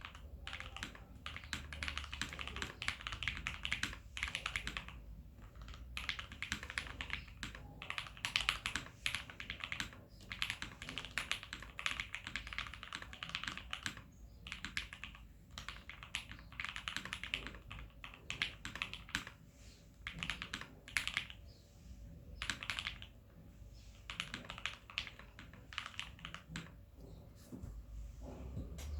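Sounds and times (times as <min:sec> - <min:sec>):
mechanical keyboard typing: 0:00.0 - 0:19.4, 0:20.0 - 0:21.4, 0:22.4 - 0:23.1, 0:24.1 - 0:26.8.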